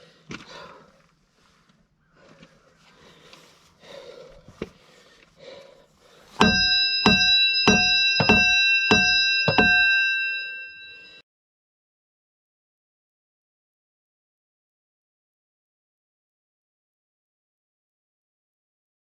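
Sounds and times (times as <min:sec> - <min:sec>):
hammer blows on steel: 0:06.4 - 0:11.2
metal ringing bell-like: 0:06.4 - 0:11.2.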